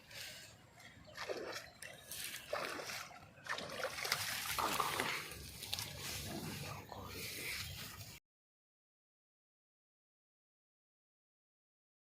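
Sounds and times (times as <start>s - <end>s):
water splashing and sloshing: 0.0s - 8.2s.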